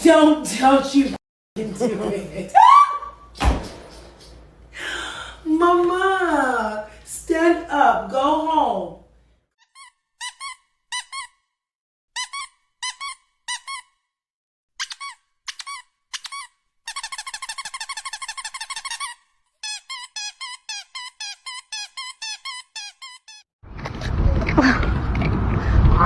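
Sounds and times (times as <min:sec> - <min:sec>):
squeaky dog toy squeaking: 0:09.6 - 0:11.4, 0:12.2 - 0:14.0, 0:14.8 - 0:23.4.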